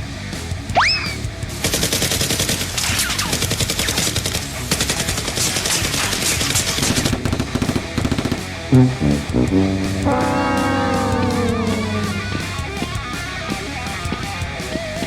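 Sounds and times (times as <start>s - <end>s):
background music: 8.7s - 13.2s.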